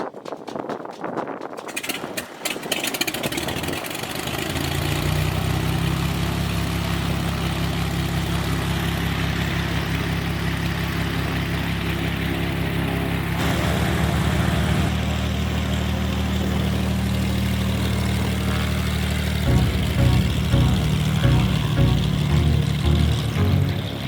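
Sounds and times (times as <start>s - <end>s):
engine cranking with rapid ticking: 1.5s - 4.9s.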